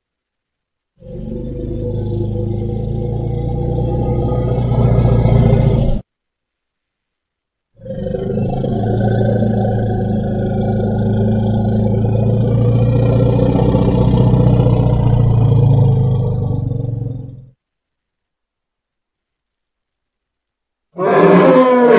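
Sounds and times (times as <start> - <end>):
elephant rumbling growl: 1.0 - 6.0, 7.8 - 17.5, 21.0 - 21.9.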